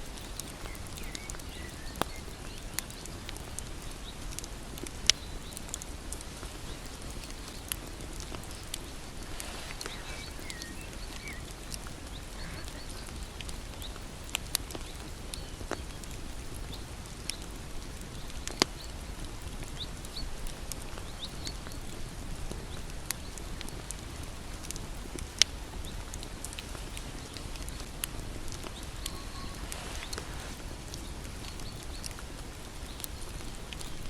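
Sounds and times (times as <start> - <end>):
wood fire crackling and popping: 0.0 - 34.0
faint high chirps: 28.6 - 32.1.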